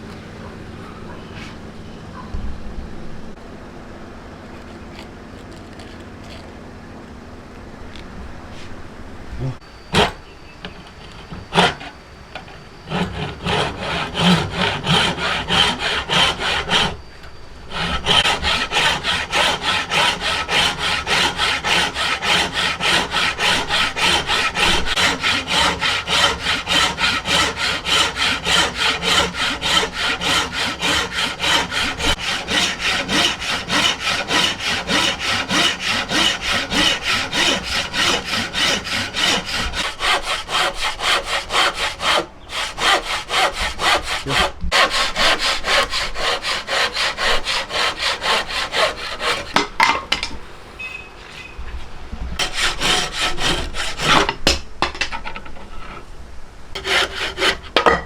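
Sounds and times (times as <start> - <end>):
hand saw cutting wood: 11.3 - 12.0, 12.9 - 17.0, 17.7 - 49.6, 52.4 - 54.4, 56.8 - 57.8.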